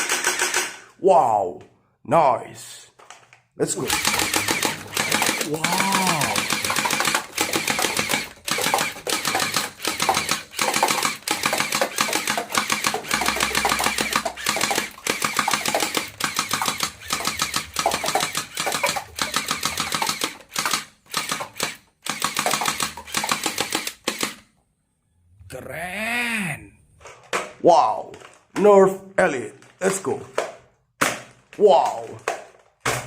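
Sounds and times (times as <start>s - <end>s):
toy gun rapid-fire clatter: 0.0s - 0.9s, 3.8s - 24.5s.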